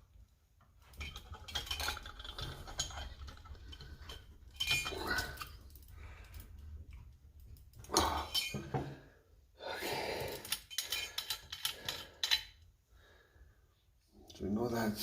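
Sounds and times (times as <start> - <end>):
metal parts clinking and scraping: 0.9 - 5.9, 7.8 - 8.8, 10.3 - 12.6.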